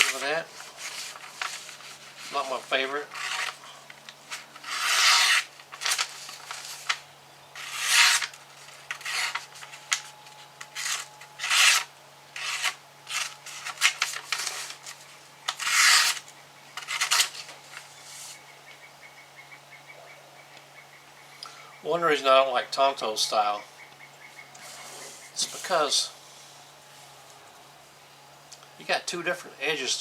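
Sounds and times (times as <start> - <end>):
knife edge rasping strokes: 4.6 - 5.5, 7.6 - 8.4.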